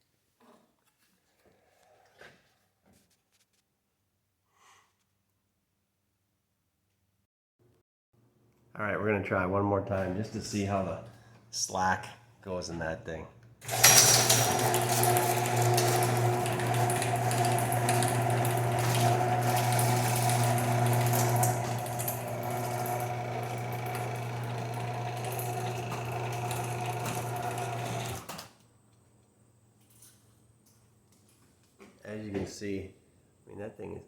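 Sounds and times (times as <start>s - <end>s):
garage door motor hum: 13.6s - 28.6s.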